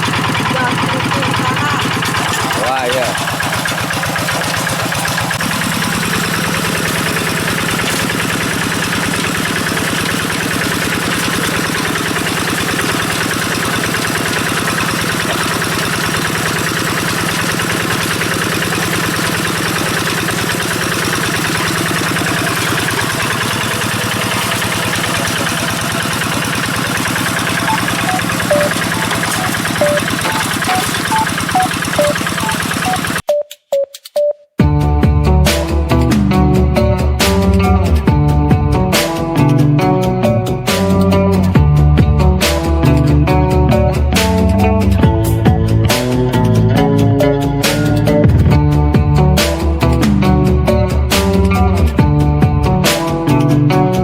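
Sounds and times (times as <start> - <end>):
diesel engine running: 0.0 - 33.2, 35.2 - 54.0
short high chirps: 27.6 - 34.3.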